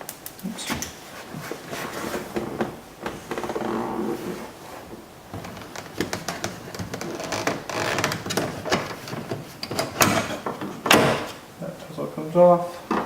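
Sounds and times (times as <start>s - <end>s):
rustling scrape of trim: 0.7s - 2.6s.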